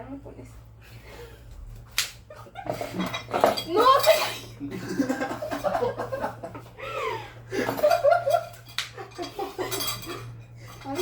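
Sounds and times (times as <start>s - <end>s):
women laughing and giggling: 2.2s - 3.2s, 4.0s - 10.4s.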